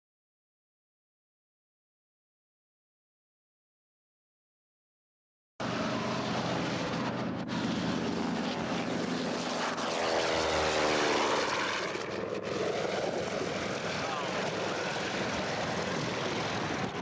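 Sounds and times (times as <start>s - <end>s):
propeller plane engine running: 5.6s - 17.0s.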